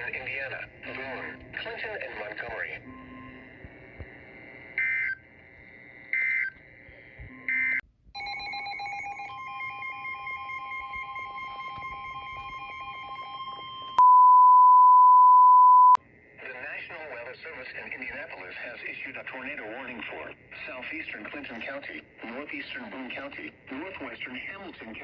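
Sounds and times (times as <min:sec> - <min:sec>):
steady warning alarm tone: 0:02.8 - 0:06.6, 0:07.2 - 0:14.1
pulsing electronic tones: 0:07.2 - 0:14.0.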